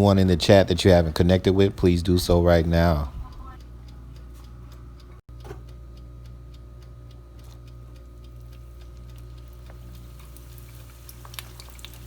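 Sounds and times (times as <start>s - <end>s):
steady low hum: 0.0s - 12.0s
faint oil pops and crackles: 6.8s - 12.0s.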